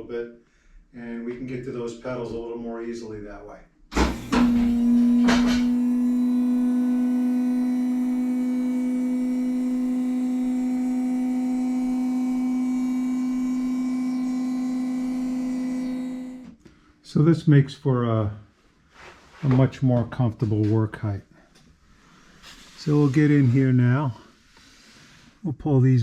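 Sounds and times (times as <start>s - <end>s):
car lift motor humming: 3.9s - 16.6s
car lift knocks: 4.0s - 5.8s.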